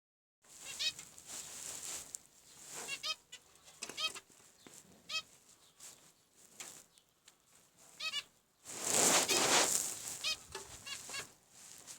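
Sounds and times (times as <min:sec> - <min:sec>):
finches giving trumpet-like calls: 0:00.6 - 0:01.0, 0:02.8 - 0:04.3, 0:05.1 - 0:05.3, 0:08.0 - 0:08.4, 0:10.2 - 0:11.3.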